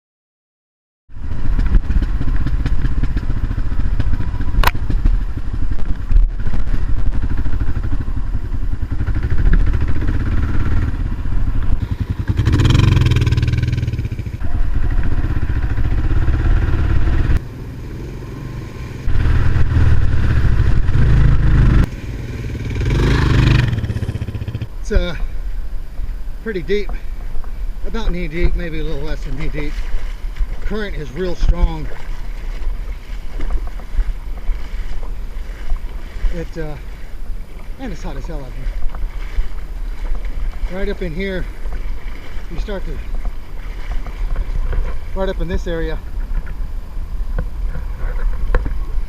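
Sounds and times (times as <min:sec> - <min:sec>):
motorcycle engine revving: 0:01.1 - 0:25.0.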